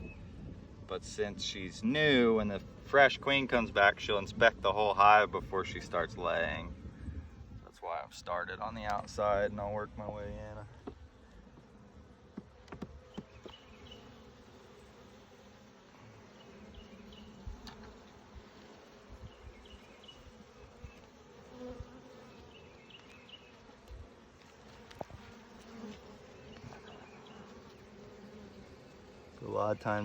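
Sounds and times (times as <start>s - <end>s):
honeybees buzzing: 0.0s - 30.0s
knocks of hive frames: 10.8s - 14.0s.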